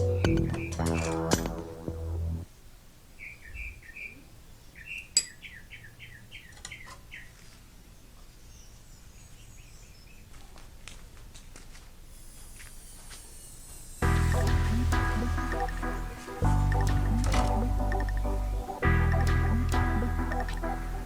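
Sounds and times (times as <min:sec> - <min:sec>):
bird chirping: 0:00.0 - 0:02.4, 0:03.2 - 0:07.4, 0:14.0 - 0:21.0.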